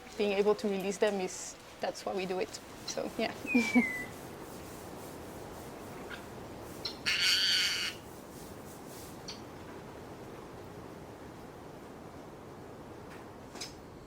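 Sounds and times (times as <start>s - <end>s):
parrot squawk: 7.0s - 8.0s.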